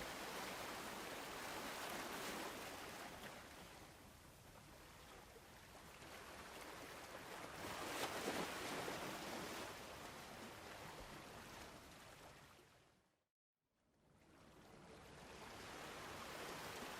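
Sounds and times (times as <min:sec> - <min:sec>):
ocean waves breaking: 0:00.0 - 0:03.8.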